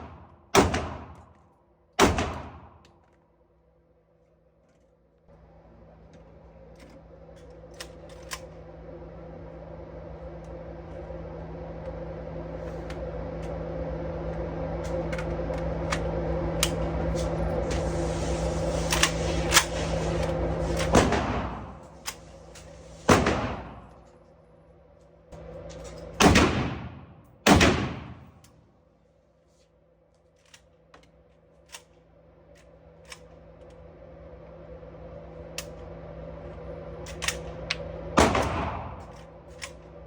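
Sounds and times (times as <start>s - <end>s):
gunshots: 0.0s - 1.2s, 2.0s - 2.7s, 20.9s - 21.7s, 23.1s - 23.8s, 26.2s - 28.2s, 38.2s - 39.1s
steady hum: 0.0s - 40.0s.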